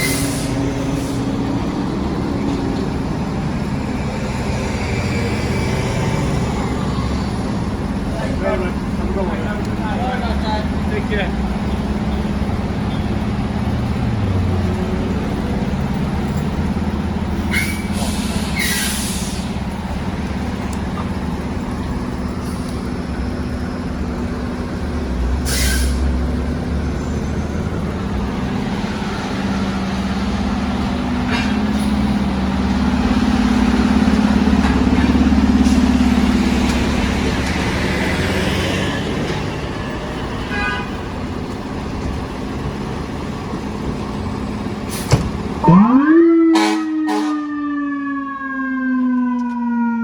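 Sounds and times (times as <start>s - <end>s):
air-brake hisses: 0.0s - 1.2s, 17.4s - 19.6s, 25.4s - 26.1s, 44.9s - 45.4s
diesel fire truck engine running: 0.0s - 50.0s.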